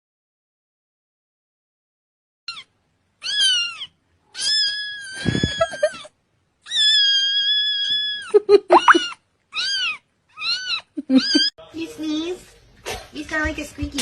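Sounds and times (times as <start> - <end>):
cat giving squeaky calls: 2.5 - 11.5.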